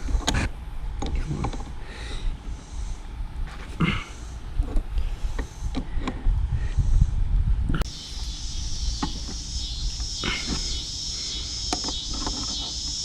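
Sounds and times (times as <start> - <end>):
insects chirring: 3.9 - 4.5, 7.8 - 13.0.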